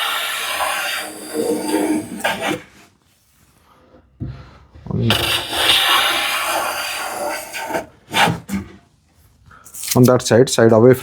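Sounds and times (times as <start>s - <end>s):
hand plane shaving wood: 0.0s - 2.8s, 5.1s - 8.6s.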